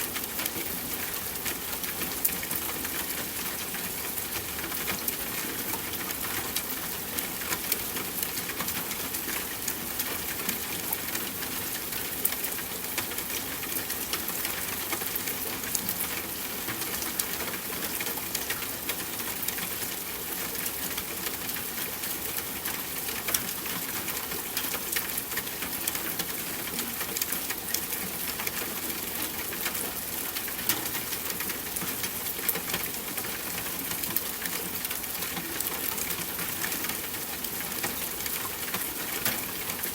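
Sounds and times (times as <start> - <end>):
steady rain hiss: 0.0 - 39.9
raindrops ticking close: 0.1 - 39.9.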